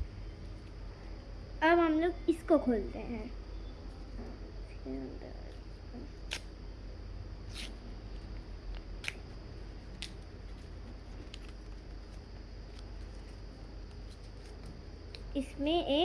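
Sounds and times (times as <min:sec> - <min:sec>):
low steady hum: 0:00.0 - 0:16.0
packaging clicks and snips: 0:06.3 - 0:06.5.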